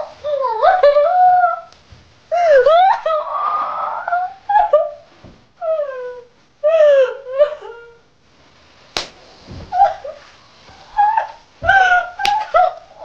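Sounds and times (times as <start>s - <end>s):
woman wailing and sobbing: 2.3s - 5.0s, 5.6s - 8.0s, 9.7s - 10.2s, 10.8s - 13.0s
sharp smack: 9.0s - 9.2s.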